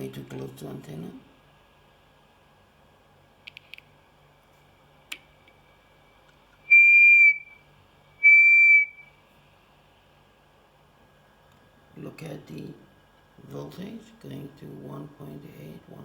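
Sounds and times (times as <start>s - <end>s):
faint steady whine: 0.0s - 16.0s
clicks: 3.5s - 3.9s
high-pitched sounder tones: 6.7s - 7.6s.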